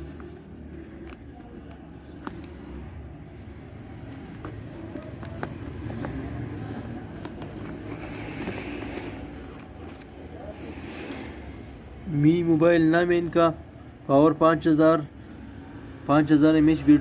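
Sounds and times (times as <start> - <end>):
packaging clicks and taps: 0.0 - 10.1.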